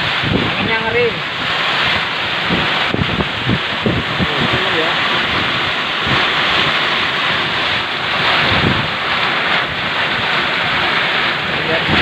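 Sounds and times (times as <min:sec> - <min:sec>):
heavy rain hissing: 0:00.0 - 0:12.0
storm wind buffeting microphone: 0:00.0 - 0:12.0.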